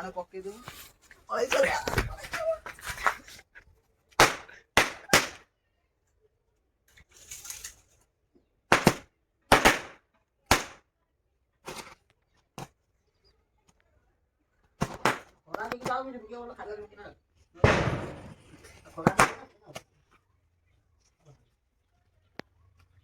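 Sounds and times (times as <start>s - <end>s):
fireworks popping: 4.1s - 5.4s, 8.7s - 10.8s, 14.8s - 16.0s, 17.6s - 19.9s.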